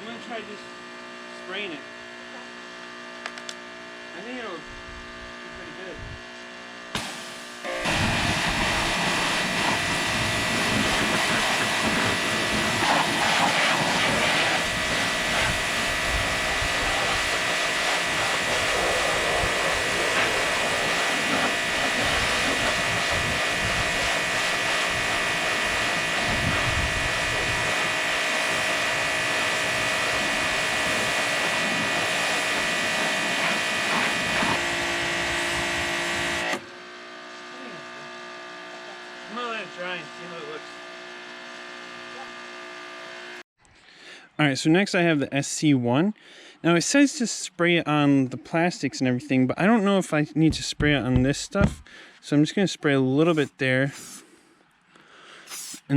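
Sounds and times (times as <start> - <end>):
motor and pump whine: 0.0 - 43.4
pressure washer water jet hissing: 7.0 - 36.6, 55.5 - 55.9.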